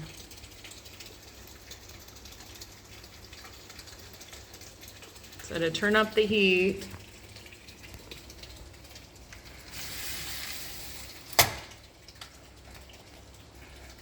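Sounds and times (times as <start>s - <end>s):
heater hiss: 9.7s - 11.6s
heater control clicks: 11.3s - 11.8s.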